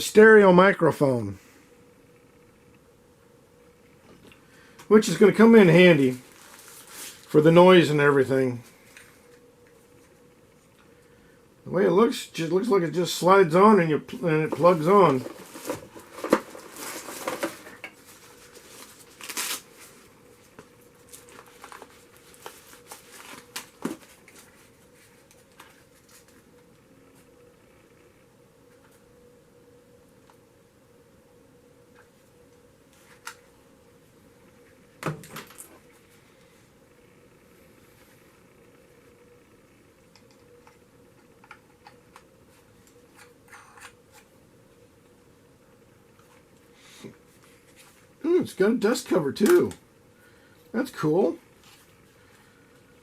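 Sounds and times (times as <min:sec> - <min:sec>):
faint steady hum: 0:00.0 - 0:53.0
packaging rustling and crinkling: 0:05.9 - 0:07.4, 0:14.4 - 0:26.6.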